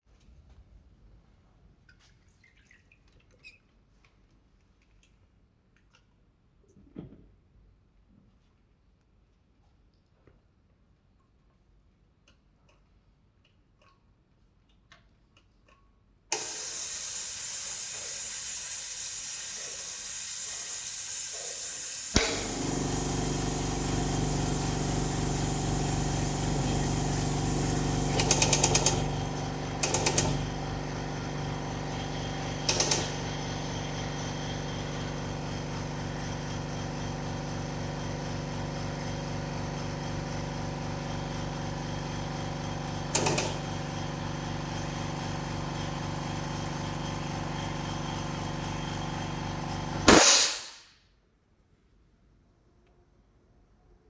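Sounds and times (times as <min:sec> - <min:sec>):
loud steady air hiss: 0:16.4 - 0:29.1, 0:50.0 - 0:50.9
motor humming: 0:20.7 - 0:50.2
short loud hisses: 0:50.1 - 0:50.9.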